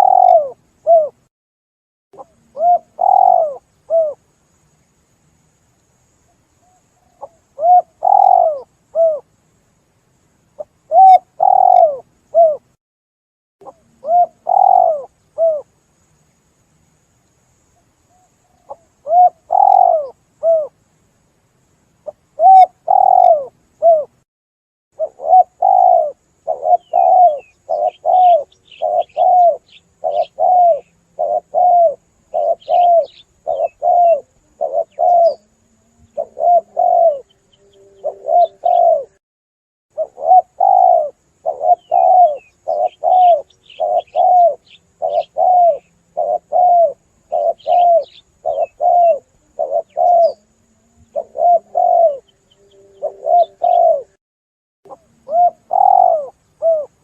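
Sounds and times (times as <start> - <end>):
doves cooing: 0.0 - 1.2, 2.2 - 4.2, 7.1 - 9.2, 10.9 - 12.7, 13.6 - 15.7, 18.6 - 20.7, 22.4 - 24.2, 25.0 - 39.2, 40.0 - 54.2, 54.9 - 57.0
faint higher chirps: 25.0 - 39.2, 40.0 - 54.2.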